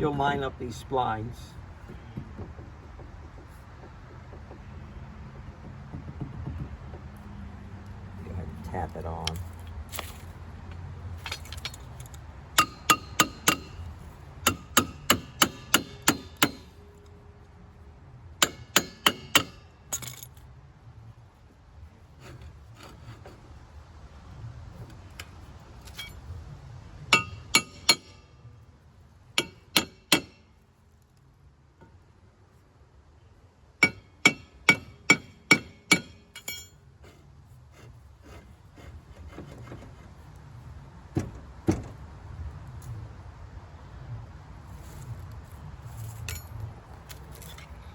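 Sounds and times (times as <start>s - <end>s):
hammer striking metal: 12.6s - 13.8s, 14.4s - 16.8s, 18.4s - 20.2s, 27.1s - 28.4s, 29.4s - 30.5s, 33.8s - 36.7s.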